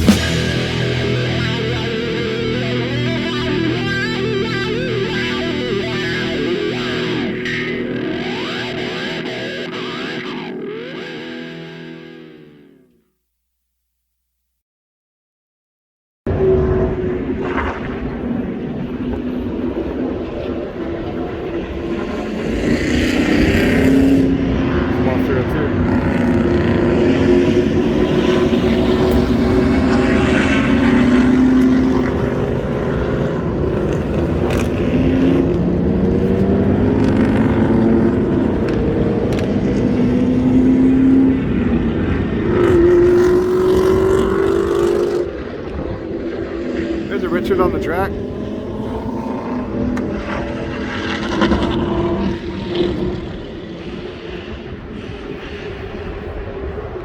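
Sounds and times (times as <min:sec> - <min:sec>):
vehicle engine running: 0:00.0 - 0:10.1, 0:18.4 - 0:43.0
wind and road noise: 0:16.3 - 0:57.0.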